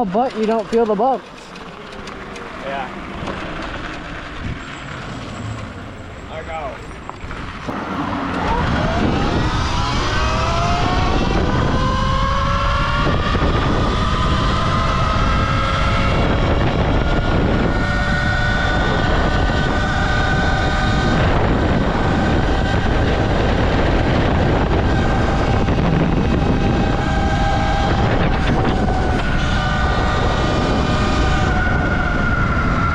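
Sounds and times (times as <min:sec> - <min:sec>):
electric motor whine: 0:07.7 - 0:32.9.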